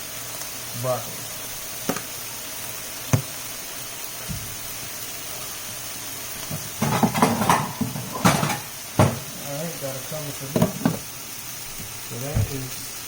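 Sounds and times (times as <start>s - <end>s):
steady low hiss: 0.0s - 13.0s
pan clattering: 6.5s - 9.4s.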